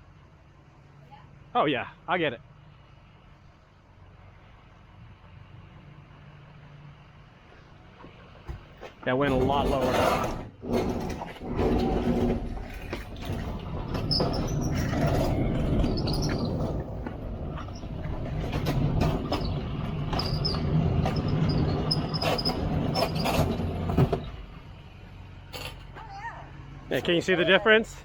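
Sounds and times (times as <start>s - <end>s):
refrigerator scraping and rumbling: 8.5s - 26.0s
high metal squeaks: 9.3s - 24.6s.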